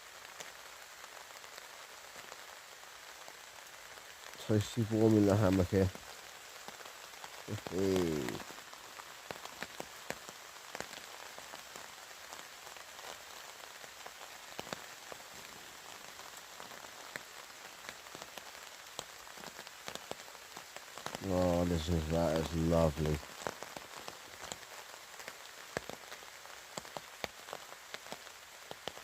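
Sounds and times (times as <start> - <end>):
rain on a tarp: 0.0 - 29.0
man's short vocal sound: 7.5 - 8.4.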